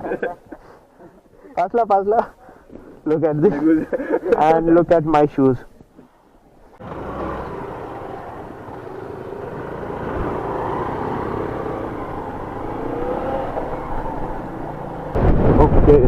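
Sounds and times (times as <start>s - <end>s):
road noise: 1.5s - 16.0s
motorcycle engine running: 6.8s - 15.1s.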